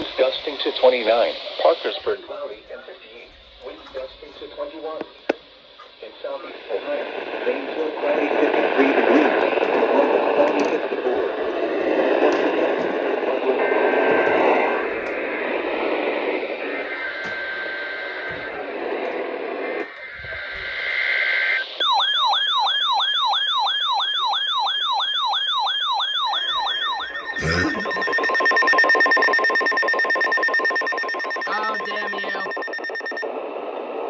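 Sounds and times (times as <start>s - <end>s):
radio static: 0.0s - 21.2s, 26.4s - 33.4s
warbling siren alarm: 21.5s - 33.2s
pulsing two-tone beep: 25.8s - 33.2s.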